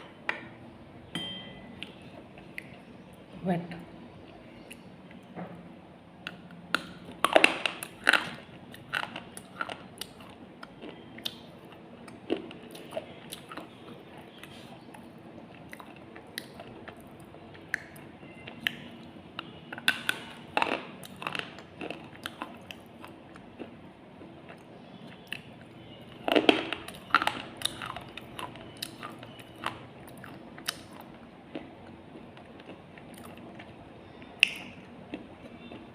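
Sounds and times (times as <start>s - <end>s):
person biting and chewing: 26.2s - 33.7s.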